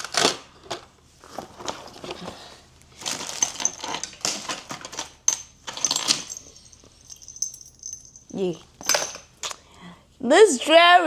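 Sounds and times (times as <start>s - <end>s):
metal jewelry clinking: 3.4s - 9.4s
high metallic ringing: 6.3s - 9.2s.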